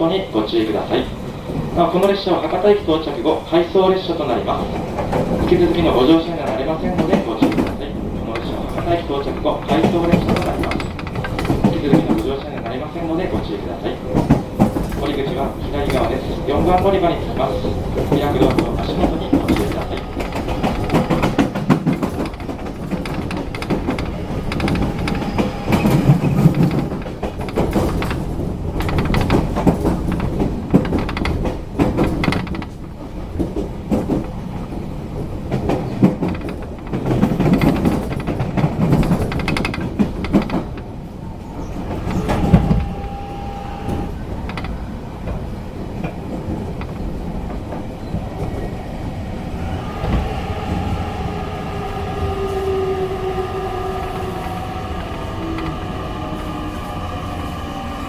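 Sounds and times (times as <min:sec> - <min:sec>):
train car rumble: 0:00.0 - 0:58.0
clicks from rail joints: 0:00.4 - 0:58.0
steady tone: 0:42.0 - 0:44.2.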